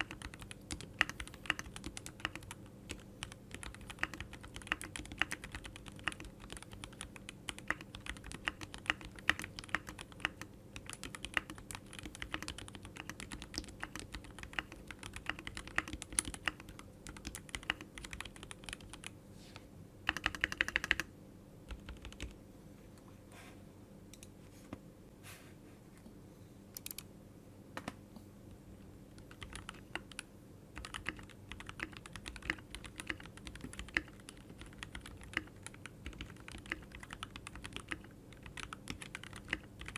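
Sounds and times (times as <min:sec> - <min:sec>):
keyboard key clicks: 0:26.8 - 0:27.0.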